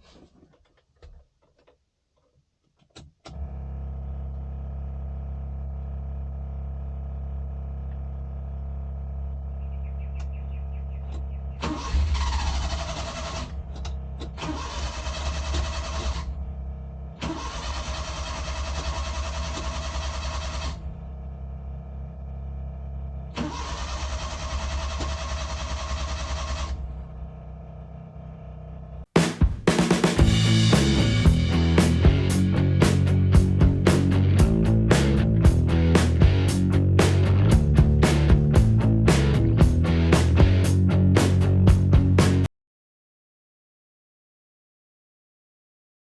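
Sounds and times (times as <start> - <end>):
engine cranking on starter: 3.3 - 4.2, 11.6 - 16.5, 17.2 - 21.0, 23.3 - 27.0, 30.0 - 42.5
steady low hum: 30.2 - 42.5.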